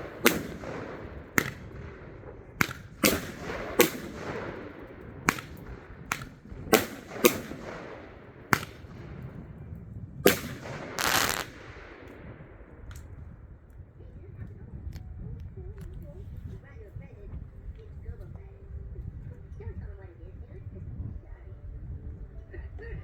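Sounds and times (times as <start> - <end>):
fireworks banging: 0.0 - 9.7, 10.3 - 13.2.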